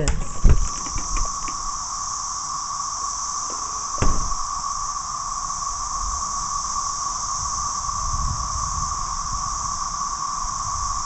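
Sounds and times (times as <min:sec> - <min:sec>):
cicadas droning: 0:00.0 - 0:11.0.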